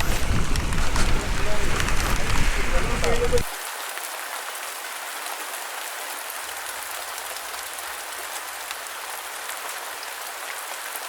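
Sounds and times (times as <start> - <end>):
raindrops ticking: 0.0 - 4.2
steady rain falling: 0.0 - 11.0.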